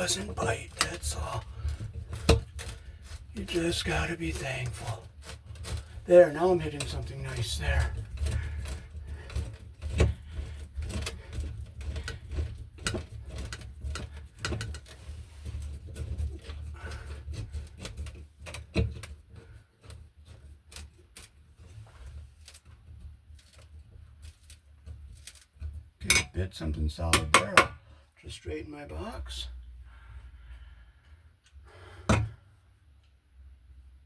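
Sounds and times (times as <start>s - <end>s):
screw clicking and creaking: 0.0s - 21.8s
sharp knocks: 27.2s - 27.8s.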